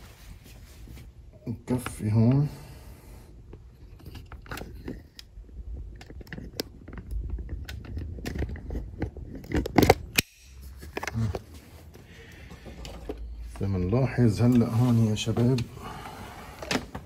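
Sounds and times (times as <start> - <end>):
wiring and tools clicking: 3.5 - 13.7.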